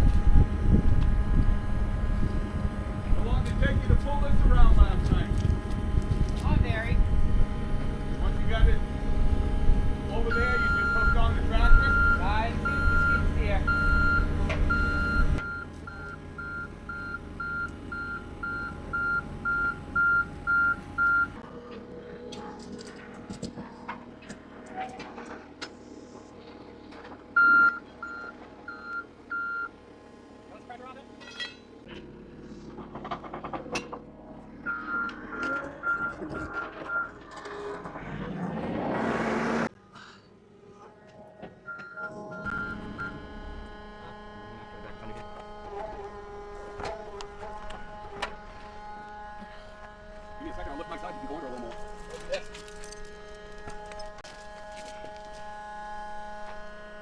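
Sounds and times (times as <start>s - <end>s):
machine engine running: 0.0s - 39.8s, 40.8s - 57.0s
reversing alarm beeping: 10.2s - 21.4s, 27.4s - 29.8s, 34.6s - 38.0s, 41.2s - 50.1s
rush of noise: 34.4s - 39.8s.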